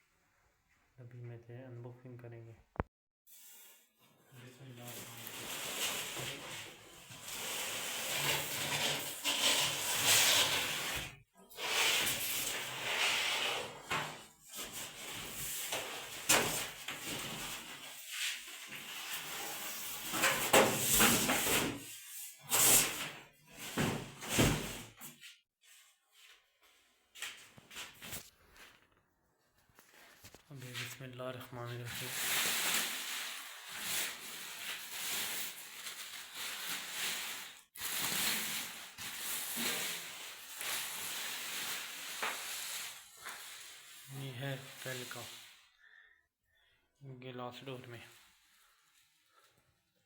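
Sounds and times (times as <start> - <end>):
packaging rustling and scraping: 4.8 - 24.9, 27.4 - 31.0, 31.7 - 45.7.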